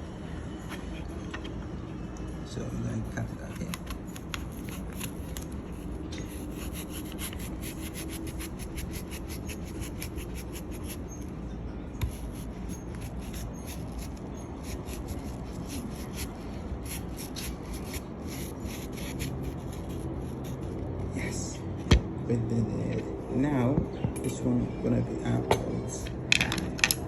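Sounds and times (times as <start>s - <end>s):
knife cutting into apple: 12.0s - 20.7s.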